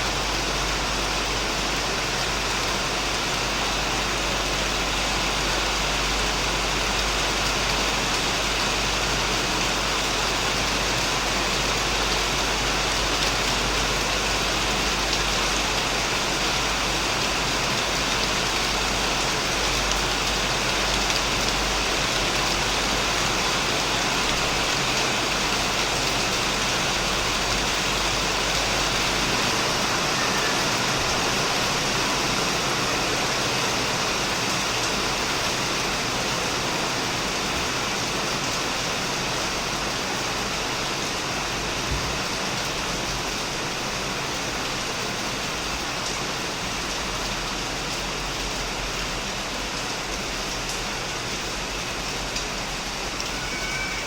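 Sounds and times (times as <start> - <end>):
heavy rain on a roof: 0.0 - 54.0.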